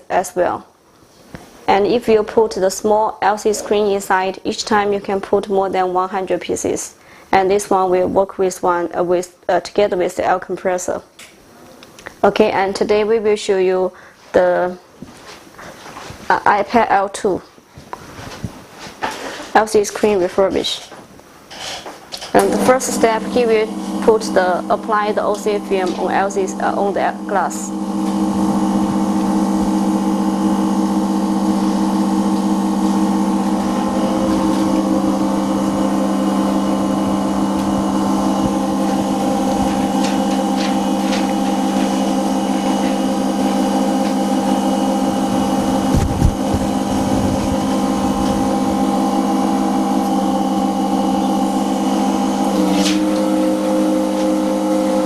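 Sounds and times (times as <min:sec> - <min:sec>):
pump motor humming: 0:21.5 - 0:55.0.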